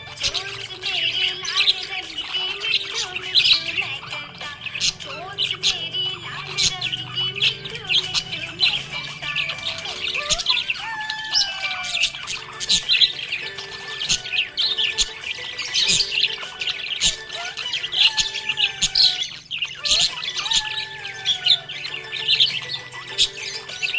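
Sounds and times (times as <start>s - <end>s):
budgerigars chirping and warbling: 0.0s - 23.9s.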